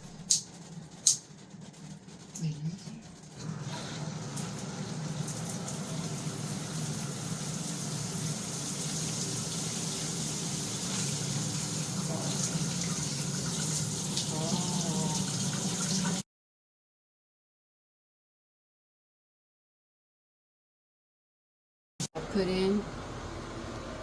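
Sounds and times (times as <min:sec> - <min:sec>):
shower water running: 0:00.0 - 0:16.2.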